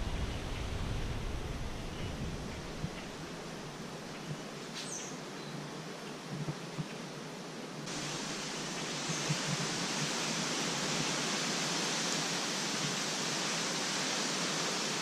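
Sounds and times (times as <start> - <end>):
wind rushing over microphone: 0.0 - 4.0.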